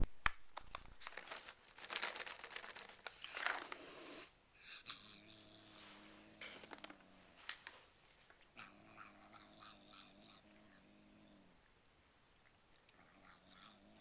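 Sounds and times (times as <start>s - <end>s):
cat crunching treats: 0.3s - 4.0s, 6.4s - 14.0s
cat growling while eating: 3.7s - 7.4s, 8.5s - 11.8s, 12.4s - 14.0s.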